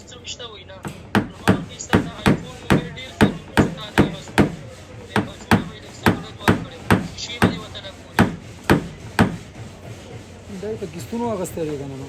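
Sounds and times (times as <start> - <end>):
hammer tapping sheet metal: 0.9 - 9.9.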